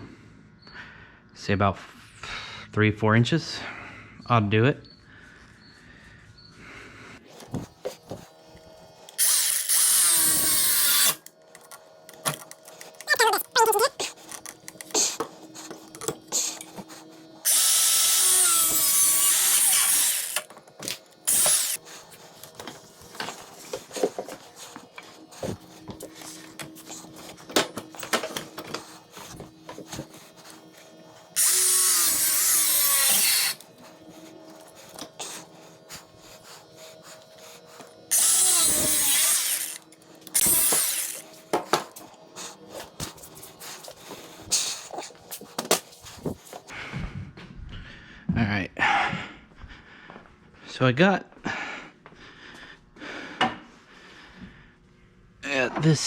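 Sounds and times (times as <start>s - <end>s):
power tool cutting metal: 9.1s - 11.3s, 17.4s - 21.8s, 31.3s - 33.7s, 38.1s - 41.5s.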